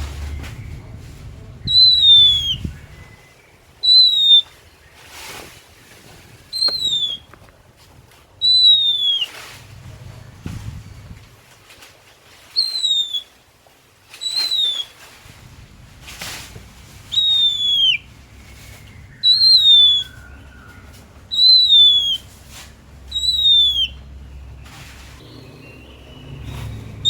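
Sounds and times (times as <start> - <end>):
bird chips: 0.0 - 7.6, 8.4 - 13.4, 14.1 - 15.3, 16.1 - 27.0
bird whistled notes: 1.6 - 4.6, 6.5 - 7.3, 8.4 - 9.4, 12.5 - 13.3, 14.2 - 15.0, 17.1 - 22.3, 23.1 - 24.0, 25.2 - 27.0.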